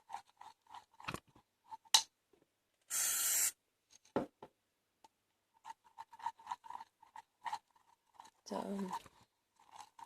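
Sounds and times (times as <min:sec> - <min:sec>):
spray bottle hiss: 0:02.9 - 0:03.6.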